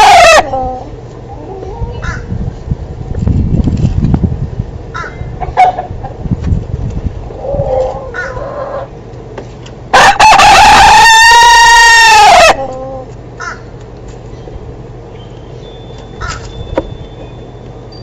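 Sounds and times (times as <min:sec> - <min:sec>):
rooster crowing: 0:00.0 - 0:00.6, 0:09.9 - 0:12.8
chicken calls: 0:00.0 - 0:02.3, 0:04.9 - 0:06.2, 0:07.3 - 0:09.0, 0:09.9 - 0:13.7.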